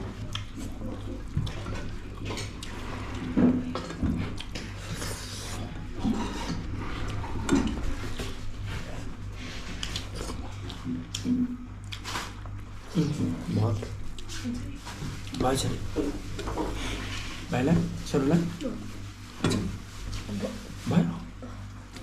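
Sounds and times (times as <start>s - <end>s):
mouth sounds of eating: 0.0s - 15.4s
steady low hum: 0.0s - 22.0s.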